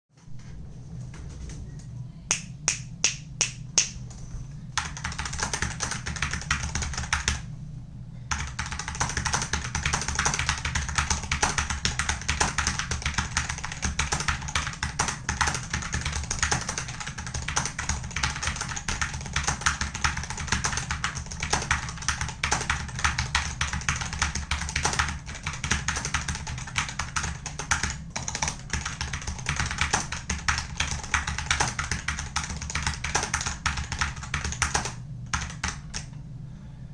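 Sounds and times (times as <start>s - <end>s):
keyboard typing: 4.8s - 7.4s, 8.3s - 36.1s.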